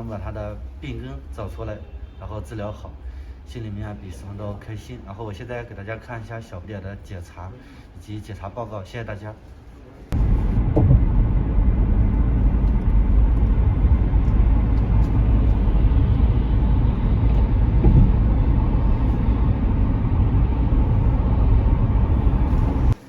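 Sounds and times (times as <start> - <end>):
car road and engine rumble: 10.1 - 23.0.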